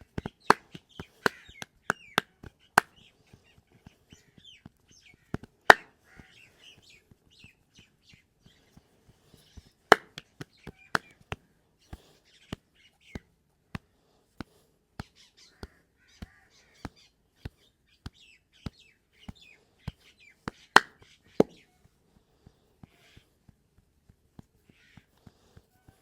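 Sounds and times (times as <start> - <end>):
hand slaps of massage: 0.0 - 4.0, 4.6 - 6.3, 9.9 - 21.7
birds chirping: 0.0 - 13.4, 14.0 - 23.4, 24.5 - 26.0.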